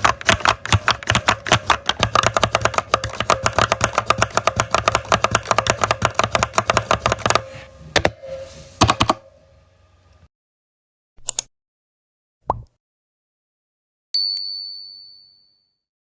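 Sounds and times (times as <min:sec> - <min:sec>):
typing on computer keyboard: 0:00.0 - 0:07.5.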